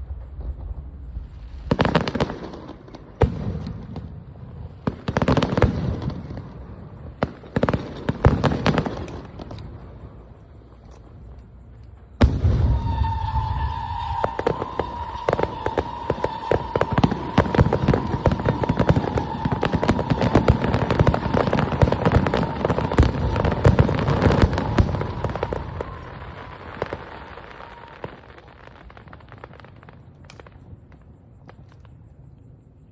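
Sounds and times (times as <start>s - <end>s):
fireworks bangs and crackling: 0.0s - 32.3s.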